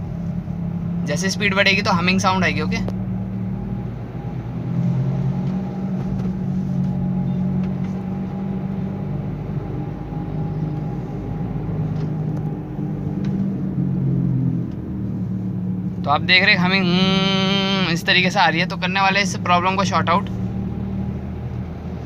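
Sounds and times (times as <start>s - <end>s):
low humming drone: 0.0s - 22.0s
road and drivetrain rumble: 0.0s - 22.0s.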